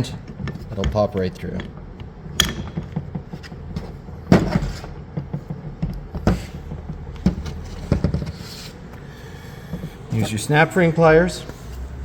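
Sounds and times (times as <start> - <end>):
metal parts knocking and clicking: 2.4 - 4.7.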